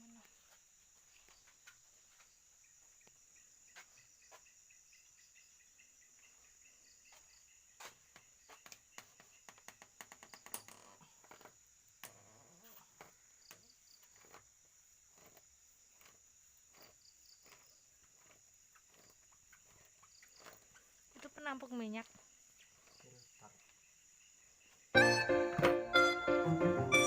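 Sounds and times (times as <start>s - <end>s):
crickets chirring: 0.0s - 25.4s.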